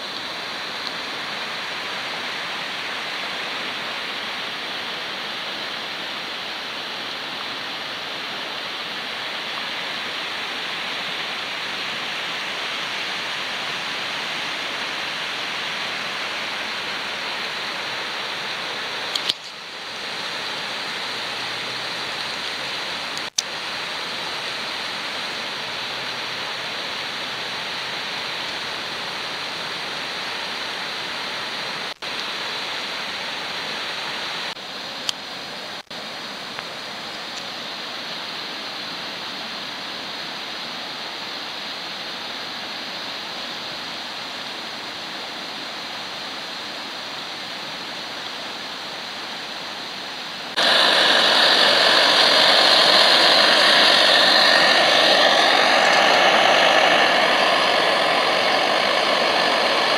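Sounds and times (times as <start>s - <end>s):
stove burner hissing: 6.2s - 32.5s, 50.5s - 59.9s.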